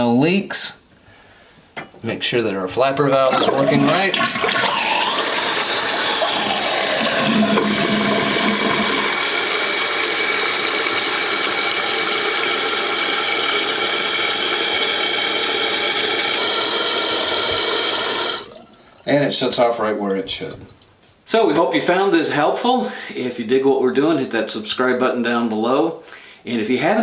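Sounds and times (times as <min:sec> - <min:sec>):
toilet flushing: 0:03.2 - 0:19.7
tank refilling with hissing water: 0:03.3 - 0:19.5.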